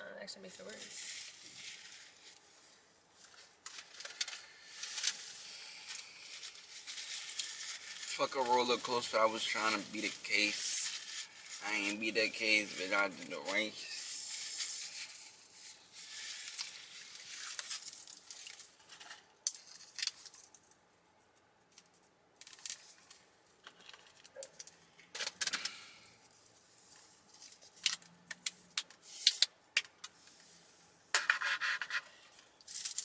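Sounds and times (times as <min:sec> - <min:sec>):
food packaging clicks and rustling: 0:03.2 - 0:10.1, 0:16.3 - 0:26.5, 0:27.3 - 0:30.2, 0:32.3 - 0:33.0.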